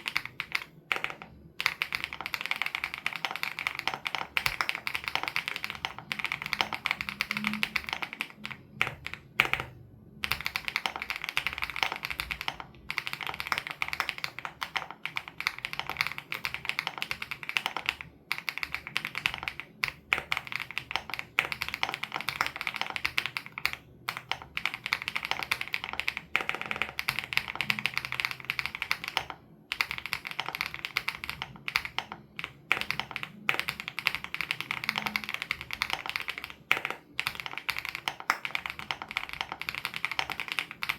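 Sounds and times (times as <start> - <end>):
mechanical keyboard typing: 0.0 - 40.9.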